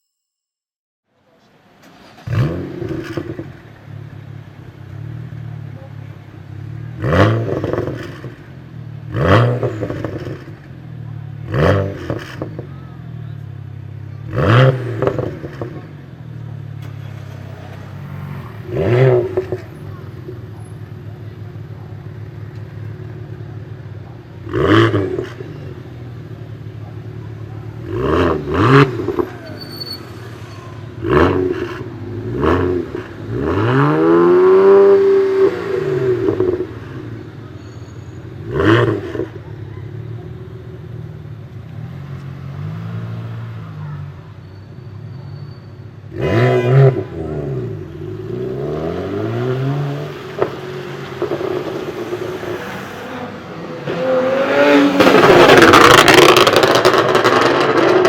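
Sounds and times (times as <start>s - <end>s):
car engine revving: 1.7s - 12.9s, 13.6s - 44.0s, 46.0s - 58.0s
exhaust pops and crackles: 16.7s - 25.6s, 50.3s - 52.3s, 55.0s - 58.0s.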